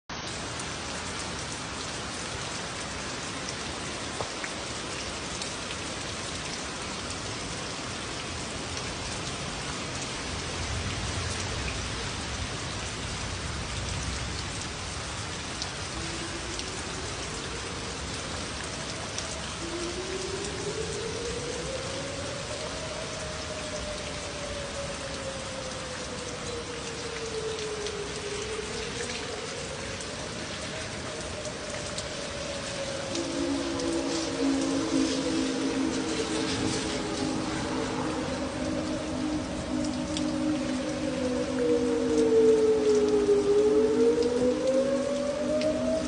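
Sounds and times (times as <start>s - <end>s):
heavy rain pouring: 0.1s - 46.0s
thunder rumble: 30.3s - 46.0s
faint rising tone: 32.0s - 46.0s.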